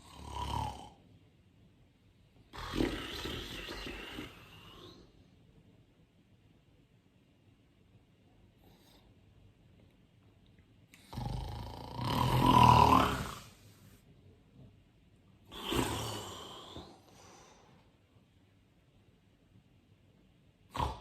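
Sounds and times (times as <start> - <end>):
person snoring: 0.0 - 1.0, 2.5 - 5.1, 11.0 - 13.7, 15.5 - 17.4, 20.7 - 21.0.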